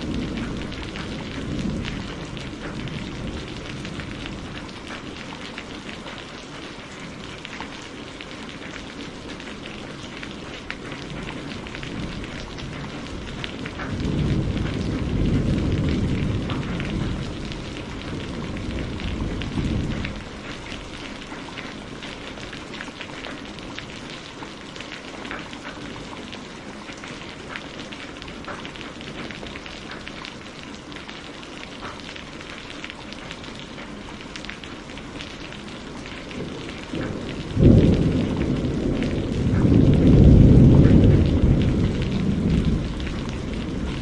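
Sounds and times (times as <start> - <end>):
loud thunder clap rolling: 0.0 - 5.0, 11.1 - 20.5, 36.2 - 44.0
low thunder rumble: 0.0 - 5.1, 10.8 - 21.2, 35.7 - 44.0
rain drops pattering: 0.0 - 44.0.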